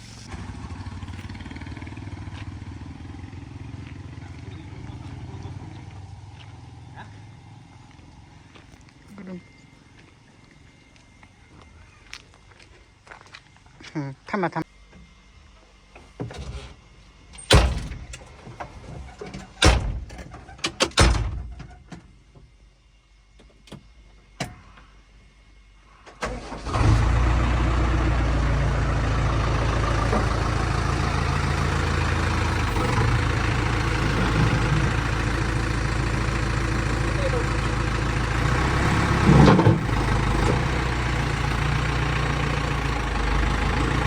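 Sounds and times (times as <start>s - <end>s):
diesel engine starting and idling: 0.0s - 7.7s, 26.1s - 44.0s
knocks and clunks: 39.2s - 40.6s.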